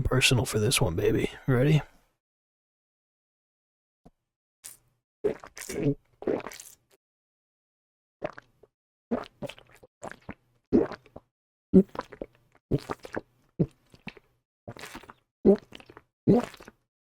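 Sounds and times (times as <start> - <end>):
man gulping into microphone: 5.3 - 6.8, 9.1 - 11.2, 11.8 - 16.8.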